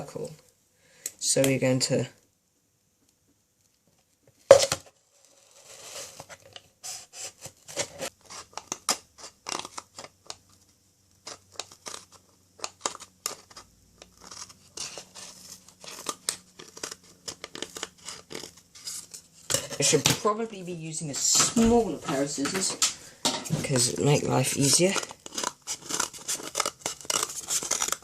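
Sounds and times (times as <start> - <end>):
scissors cutting cardboard: 5.6 - 10.4, 11.2 - 20.1, 23.7 - 28.0.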